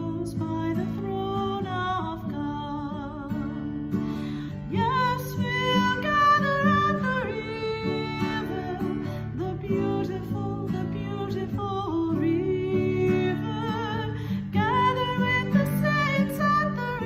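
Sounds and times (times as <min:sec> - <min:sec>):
person singing: 0:00.0 - 0:04.0, 0:04.6 - 0:17.0
acoustic guitar: 0:00.0 - 0:17.0.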